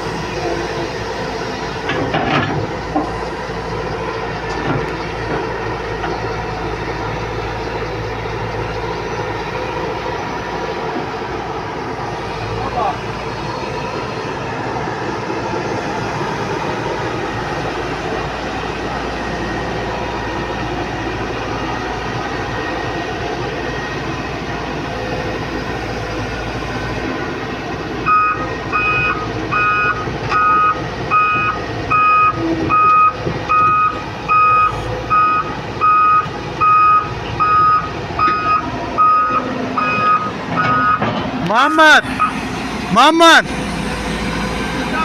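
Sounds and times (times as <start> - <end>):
diesel engine running: 0.0 - 45.0
backup alarm beeping: 28.1 - 45.0.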